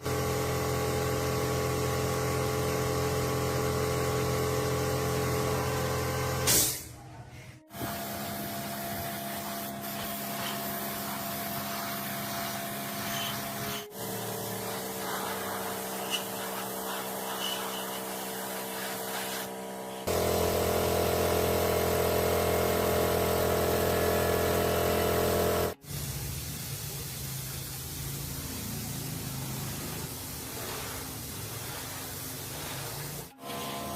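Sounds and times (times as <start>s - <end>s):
machine running: 7.7s - 25.8s, 28.2s - 33.9s.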